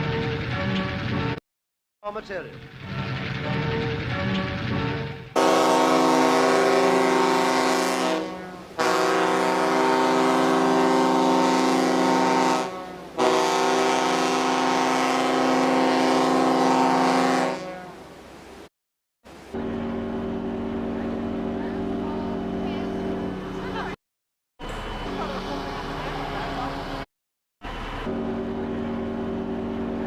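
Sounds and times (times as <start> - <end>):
ship's horn blasts: 5.4 - 18.1, 19.4 - 23.5, 27.8 - 30.0.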